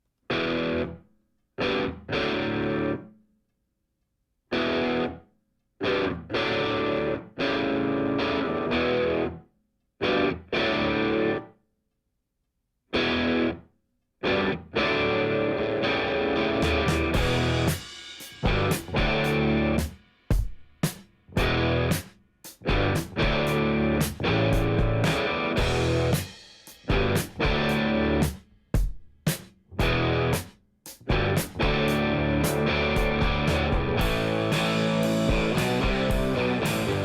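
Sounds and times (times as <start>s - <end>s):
distorted electric guitar chords: 0.3s - 1.0s, 1.6s - 3.0s, 4.6s - 5.2s, 5.8s - 9.4s, 10.0s - 11.5s, 13.0s - 13.6s, 14.2s - 19.9s, 21.4s - 22.0s, 22.6s - 26.3s, 26.9s - 28.3s, 29.8s - 30.4s, 31.1s - 37.0s.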